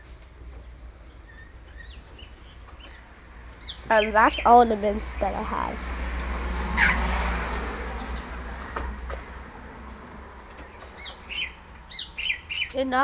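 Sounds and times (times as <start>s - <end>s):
high bird chirps: 10.7s - 12.8s.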